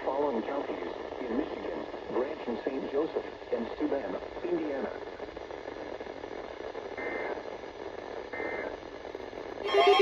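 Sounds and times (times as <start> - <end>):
radio hiss: 0.0 - 10.0
raspy data bursts: 9.6 - 10.0
warbling electronic alert tone: 9.6 - 10.0.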